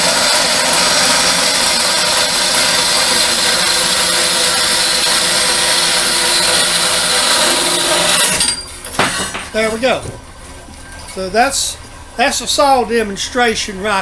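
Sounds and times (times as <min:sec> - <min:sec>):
band saw cutting metal: 0:00.0 - 0:09.4.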